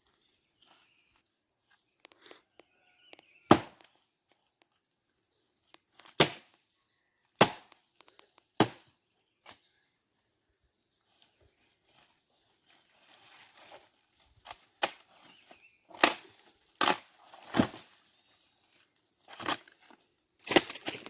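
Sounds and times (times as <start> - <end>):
axe chopping dry wood: 3.5 - 3.9, 6.0 - 6.5, 7.4 - 7.8, 8.6 - 8.9, 16.0 - 17.8
wood crackling and rustling: 19.3 - 21.0.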